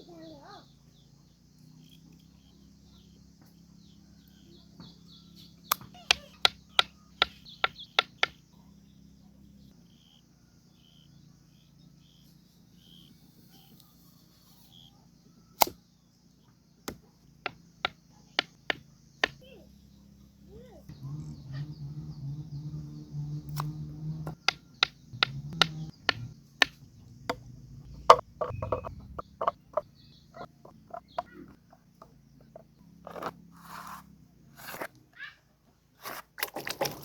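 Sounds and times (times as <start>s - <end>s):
faint high chirps: 0.0s - 33.0s
sharp clicks or knocks: 23.5s - 31.3s.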